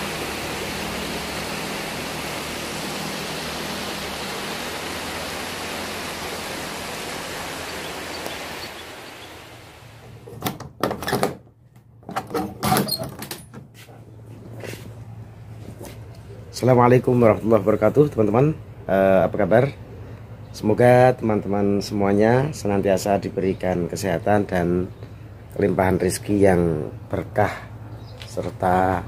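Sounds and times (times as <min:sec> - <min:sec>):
steady hiss-like noise: 0:00.0 - 0:10.4.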